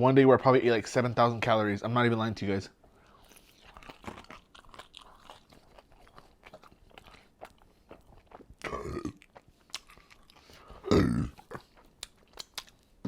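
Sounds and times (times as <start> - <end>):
person chewing and crunching food: 2.8 - 13.0
wet mouth clicks: 8.4 - 10.3, 11.3 - 12.9.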